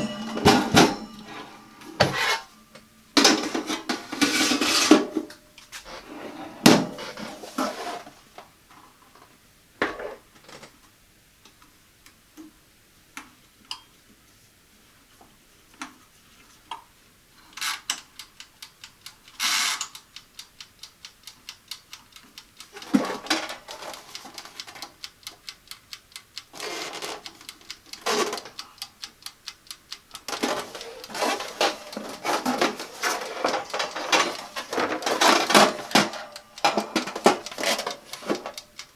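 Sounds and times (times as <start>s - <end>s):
knocks and metal clatter: 0.0s - 5.2s, 22.8s - 24.0s, 30.3s - 38.6s.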